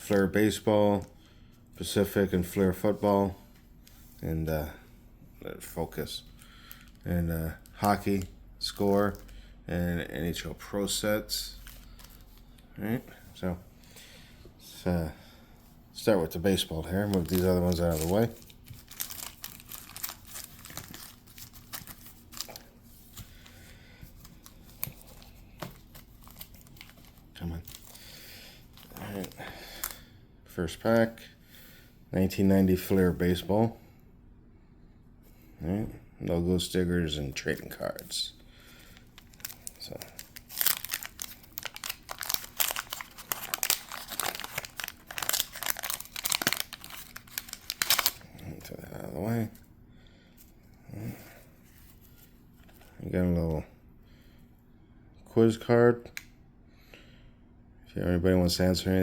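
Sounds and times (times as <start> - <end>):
wrapper crinkling and tearing: 11.4 - 12.5, 16.5 - 30.0, 38.7 - 49.6.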